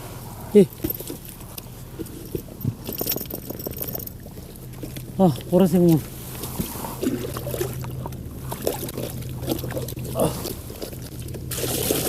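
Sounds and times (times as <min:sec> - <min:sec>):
low steady hum: 0:00.0 - 0:12.0
water sloshing and dribbling: 0:00.0 - 0:12.0
pouring water rushing: 0:07.0 - 0:12.0.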